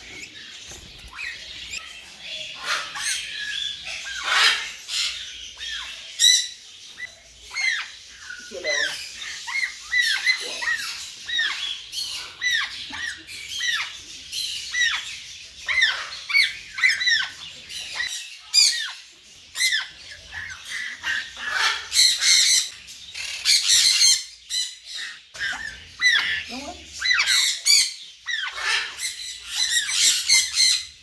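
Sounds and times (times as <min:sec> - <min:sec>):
parrot chicks squawking: 0:00.0 - 0:31.0.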